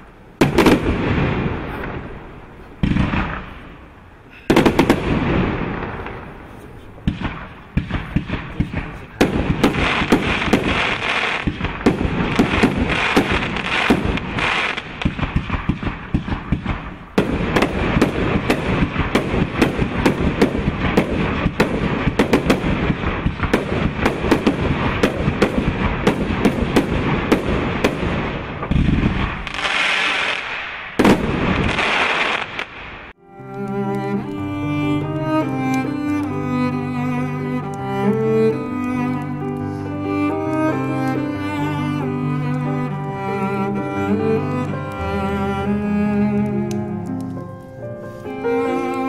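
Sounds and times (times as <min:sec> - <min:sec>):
loud firework bursts: 0:00.0 - 0:33.2
firework shots launching: 0:00.0 - 0:35.2
crackling firework stars: 0:00.0 - 0:49.0.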